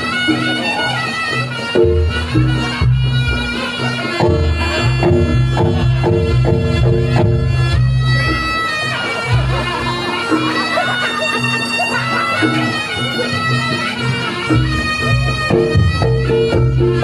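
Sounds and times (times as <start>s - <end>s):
low rhythmic drumming: 0.0s - 17.0s
reedy wind instrument melody: 0.0s - 17.0s.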